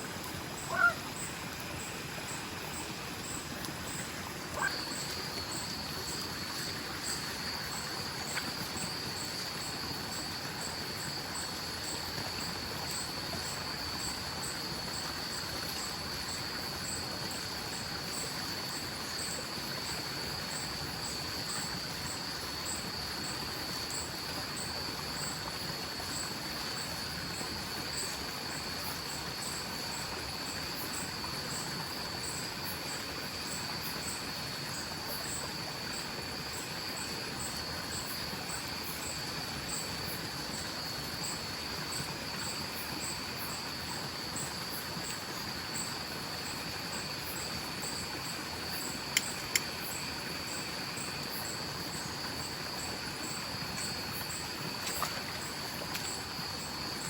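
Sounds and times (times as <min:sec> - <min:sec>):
insects trilling: 0:00.0 - 0:57.0
stream flowing: 0:00.0 - 0:57.0
insect ticking: 0:48.7 - 0:50.1.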